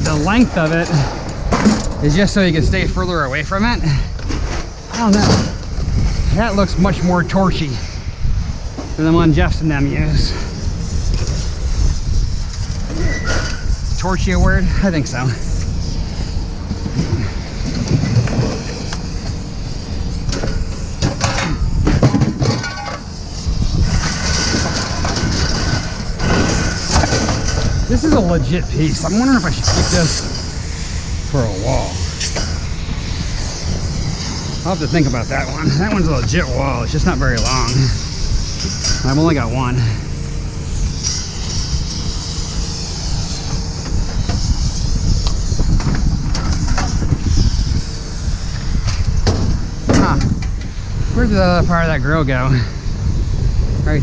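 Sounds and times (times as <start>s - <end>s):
metal clanks: 0.0s - 2.6s, 20.3s - 23.2s
scrap metal clanking: 0.0s - 2.7s, 20.2s - 31.0s
loud low rumble: 0.0s - 11.2s
heavy machinery rumbling: 0.0s - 54.0s.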